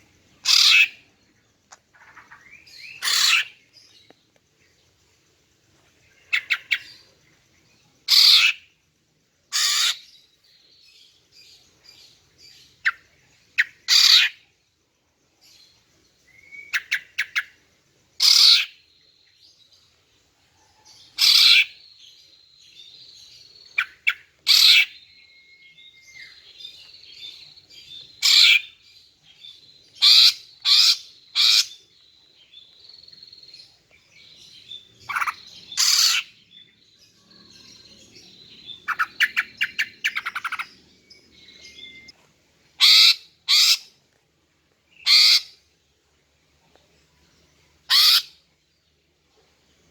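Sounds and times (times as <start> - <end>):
bird harsh call notes: 0.4 - 1.0, 2.9 - 3.5, 35.1 - 36.4, 42.8 - 43.9, 47.9 - 48.4
bird twittering: 34.1 - 42.1, 47.9 - 48.3.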